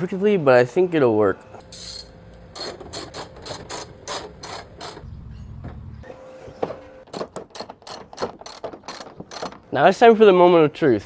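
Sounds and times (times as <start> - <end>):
low rumble: 5.0 - 6.1
ratchet wrench clicking: 7.6 - 9.6.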